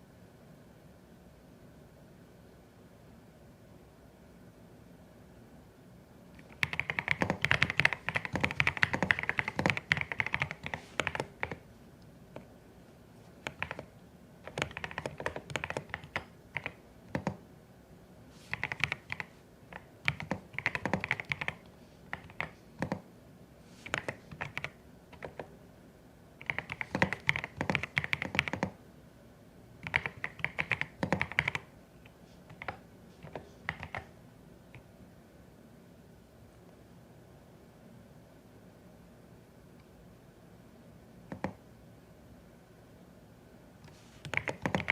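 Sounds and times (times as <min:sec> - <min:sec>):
mechanical keyboard typing: 0:06.4 - 0:11.6, 0:13.4 - 0:17.4, 0:18.5 - 0:23.0, 0:23.8 - 0:25.5, 0:26.4 - 0:28.8, 0:29.8 - 0:31.7, 0:32.5 - 0:34.1, 0:41.3 - 0:41.6, 0:44.2 - 0:44.9.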